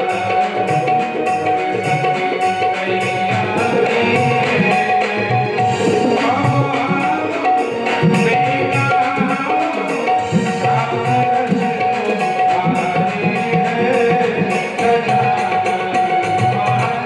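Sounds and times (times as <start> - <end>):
tabla playing a rhythm: 0.0 - 17.0.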